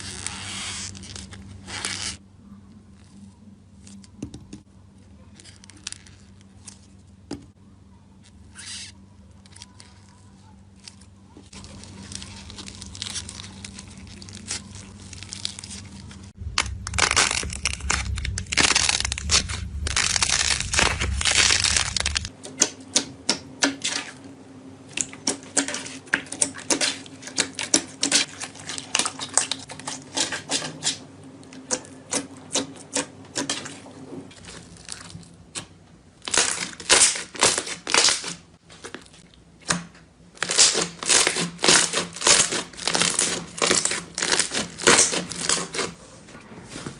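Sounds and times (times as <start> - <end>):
slime crackling and popping: 10.8 - 22.3, 36.2 - 39.0, 40.4 - 45.9.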